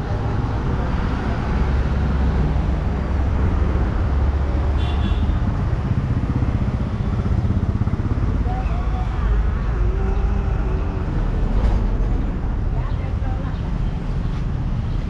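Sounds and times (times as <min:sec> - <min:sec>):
cars and motorcycles passing: 0:00.0 - 0:15.0.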